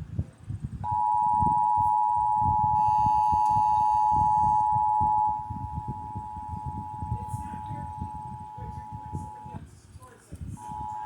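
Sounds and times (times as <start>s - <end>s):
two-tone alert signal from speaker: 0.9s - 9.5s.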